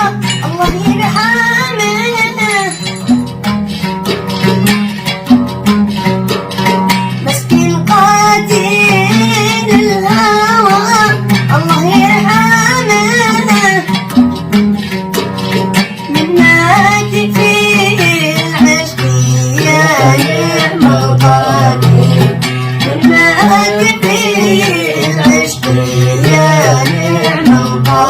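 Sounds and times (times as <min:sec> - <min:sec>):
plucked string instrument: 0:00.0 - 0:28.0
man singing ornamented melody: 0:17.0 - 0:28.0.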